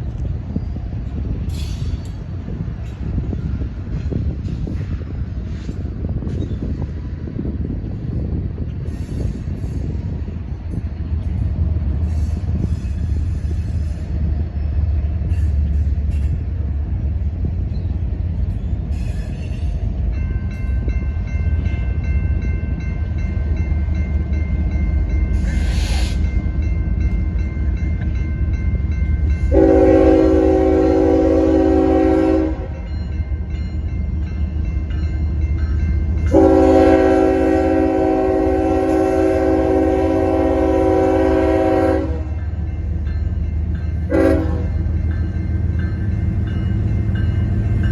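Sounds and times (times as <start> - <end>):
train rumbling: 0.0 - 47.9
locomotive air horn blasts: 29.5 - 32.9, 36.3 - 42.4, 44.1 - 44.9.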